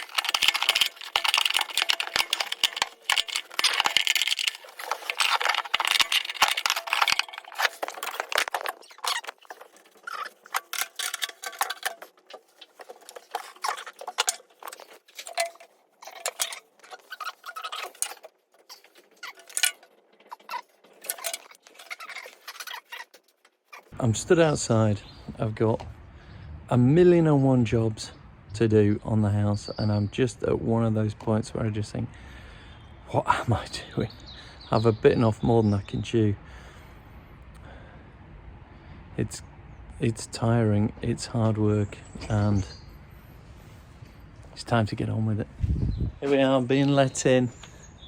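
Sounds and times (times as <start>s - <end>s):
plastic trim pieces clicking: 0.0s - 12.0s.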